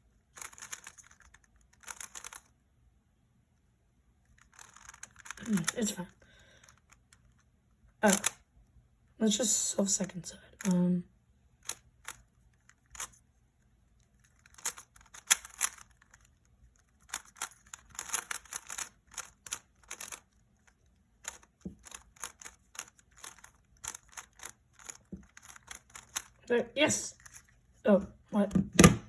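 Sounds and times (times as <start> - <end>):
puzzle cube plastic clicks: 0.3 - 2.5, 4.2 - 8.4, 11.6 - 13.2, 14.0 - 27.5.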